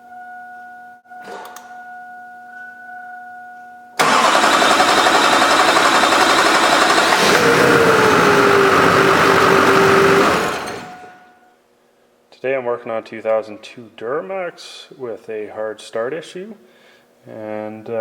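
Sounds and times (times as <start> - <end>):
faint chime: 0.0 - 4.0
diesel engine cranking: 4.0 - 11.3
whine: 4.0 - 11.5.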